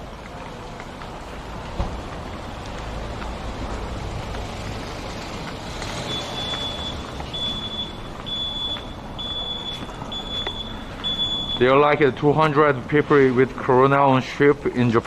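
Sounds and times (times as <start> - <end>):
passing vehicles: 0.0 - 15.0
high electronic beep: 6.1 - 11.7.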